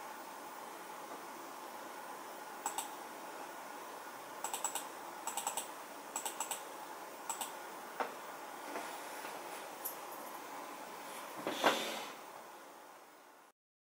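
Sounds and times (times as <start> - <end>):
steady hiss: 0.0 - 13.5
sharp clicks: 2.6 - 2.9, 4.4 - 6.7, 7.3 - 7.6.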